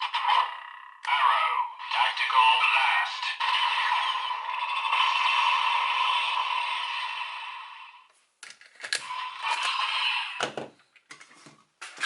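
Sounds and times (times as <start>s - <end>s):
plastic toy clicks and rattles: 8.4s - 9.8s.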